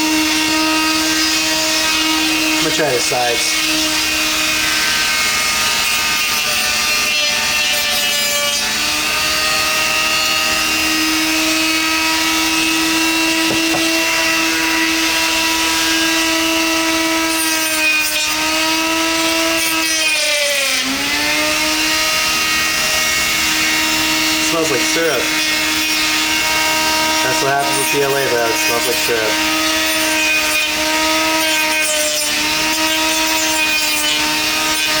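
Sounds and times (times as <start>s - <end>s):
cutting wheel cutting plastic: 0.0s - 35.0s
rotary tool motor whine: 0.0s - 35.0s.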